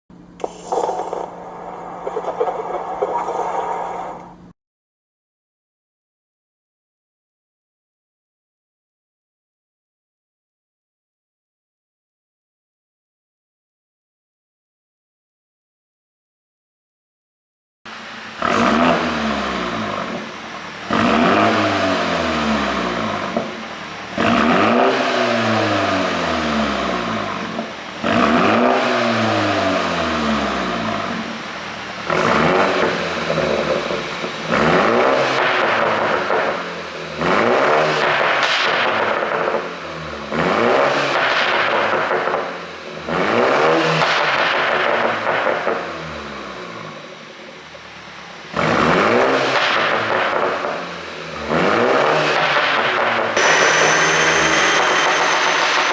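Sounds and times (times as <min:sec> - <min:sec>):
car engine revving with pops: 0:17.9 - 0:55.9.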